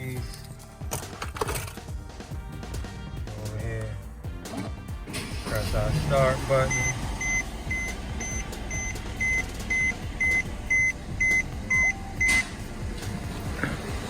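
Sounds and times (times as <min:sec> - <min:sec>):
high electronic warning beep: 0:06.6 - 0:12.5.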